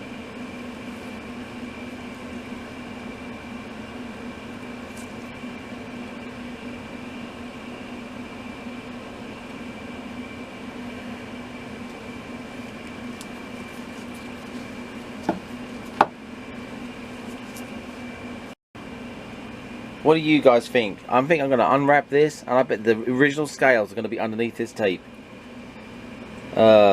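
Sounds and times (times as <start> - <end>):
mechanical fan hum: 0.0 - 26.9.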